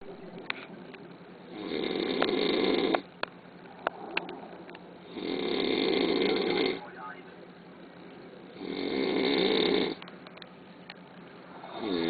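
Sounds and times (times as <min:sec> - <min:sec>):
man snoring loudly: 0:01.4 - 0:03.0, 0:05.0 - 0:06.8, 0:08.6 - 0:10.0, 0:11.6 - 0:12.0.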